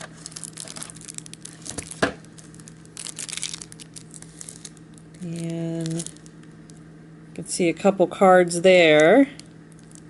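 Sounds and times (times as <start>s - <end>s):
card packaging crinkling: 0.0s - 6.8s, 9.0s - 10.0s.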